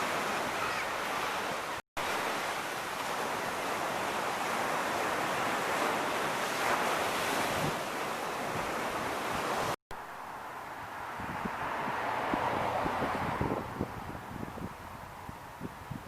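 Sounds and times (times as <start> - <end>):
ocean surf washing onto beach: 0.0 - 15.9
wind on microphone: 3.5 - 9.8, 10.9 - 16.0.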